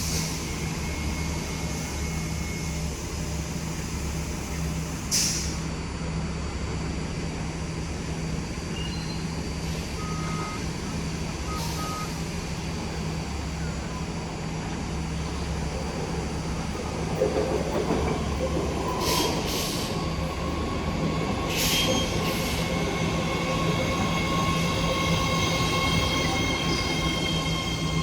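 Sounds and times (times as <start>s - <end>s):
train low hum: 0.0s - 28.0s
air hiss bursts: 5.1s - 5.6s, 19.0s - 20.0s
high wheel squeal: 21.5s - 28.0s.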